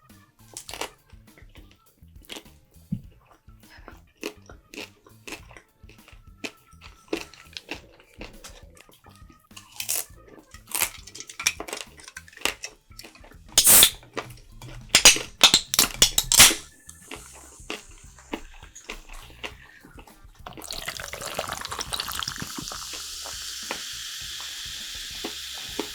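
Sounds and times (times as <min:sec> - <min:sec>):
chewing and mouth noises: 0:00.5 - 0:09.0, 0:09.6 - 0:23.5
sharp clicks: 0:15.0 - 0:16.6.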